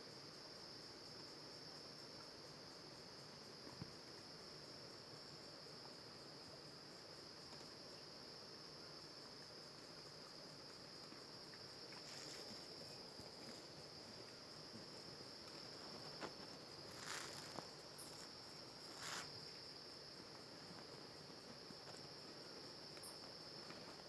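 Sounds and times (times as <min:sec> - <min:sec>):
crickets chirping: 0:00.0 - 0:24.0
soft rustles and ticks: 0:10.7 - 0:24.0.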